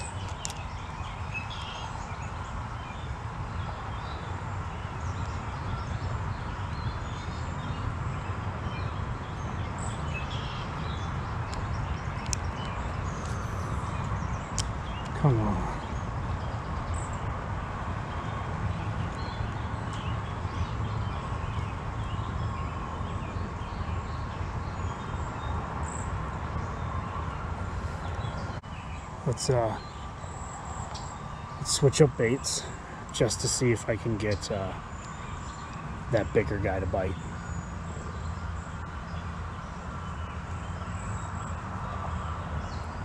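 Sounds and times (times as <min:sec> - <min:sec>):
birds chirping: 0:00.0 - 0:17.4, 0:18.1 - 0:43.0
steady low rumble: 0:10.8 - 0:17.4.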